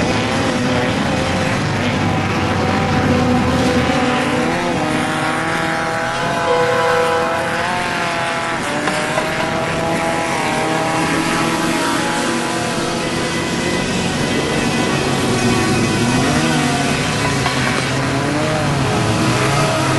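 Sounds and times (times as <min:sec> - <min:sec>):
race vehicle engine revving: 0:00.0 - 0:13.3, 0:15.2 - 0:19.9.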